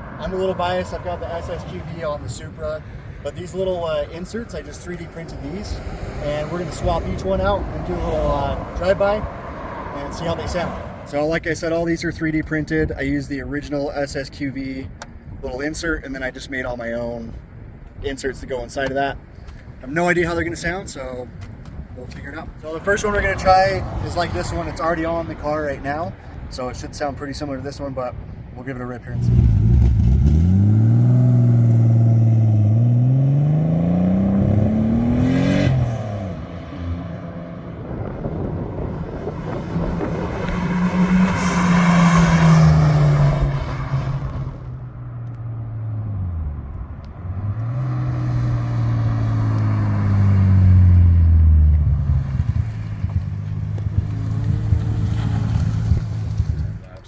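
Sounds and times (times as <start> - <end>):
car passing by: 5.2 - 11.1, 22.6 - 25.6, 29.3 - 44.7, 47.2 - 56.8
car engine accelerating: 29.2 - 56.9.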